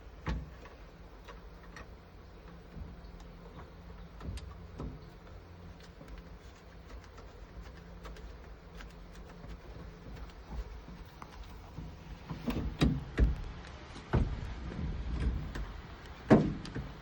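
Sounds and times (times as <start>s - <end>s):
low steady hum: 0.0s - 17.0s
light clicks and taps: 0.3s - 14.1s.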